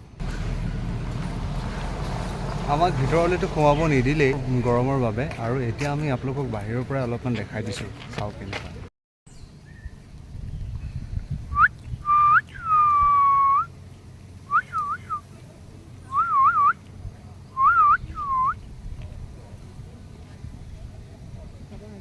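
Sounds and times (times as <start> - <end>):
bird whistling calls: 11.5 - 13.7, 14.5 - 15.3, 16.0 - 16.8, 17.5 - 18.6.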